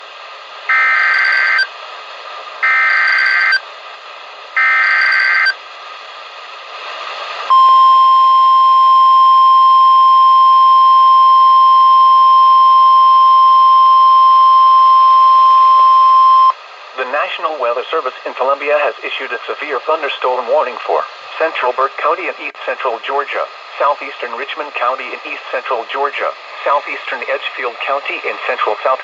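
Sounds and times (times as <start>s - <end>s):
long steady warning tone: 0.7s - 1.7s, 2.6s - 3.6s, 4.6s - 5.6s, 7.5s - 16.6s
radio hiss: 16.2s - 29.0s.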